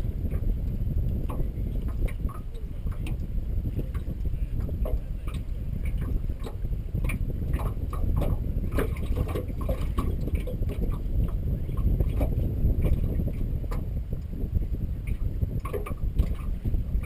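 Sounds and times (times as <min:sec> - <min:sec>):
water lapping against boat hull: 0:00.0 - 0:17.0
wind rumbling on microphone: 0:00.0 - 0:17.0
small splashes and knocks: 0:03.9 - 0:11.4.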